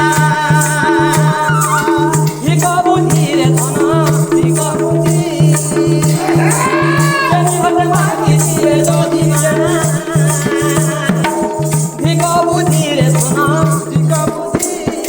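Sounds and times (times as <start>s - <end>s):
jingling rattle percussion: 0.0s - 15.0s
drum beat: 4.6s - 11.2s.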